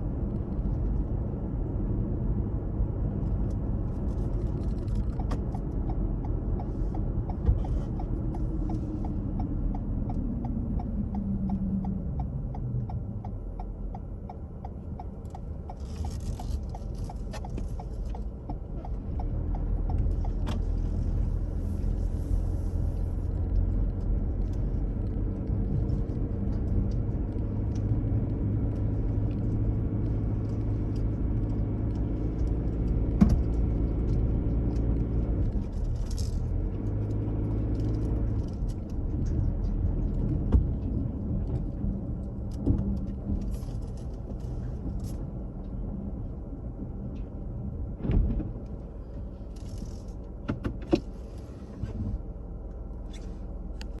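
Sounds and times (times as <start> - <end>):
car engine and tyres rumbling: 0.0 - 54.0
small clicks and knocks: 3.2 - 21.3, 23.3 - 45.8.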